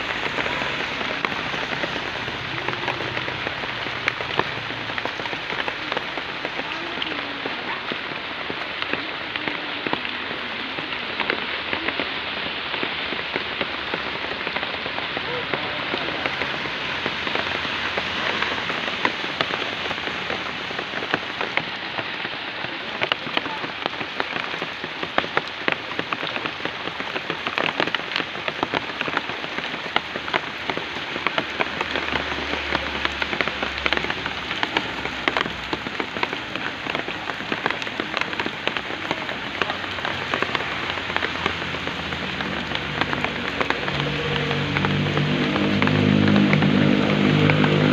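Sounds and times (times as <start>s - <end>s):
steady rain falling: 0.0s - 47.9s.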